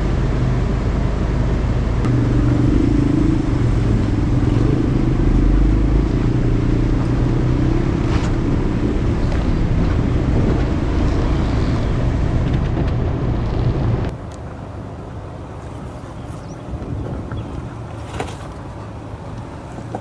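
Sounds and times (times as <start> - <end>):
truck engine drone: 0.0 - 20.0
tyre and body noise: 15.7 - 20.0.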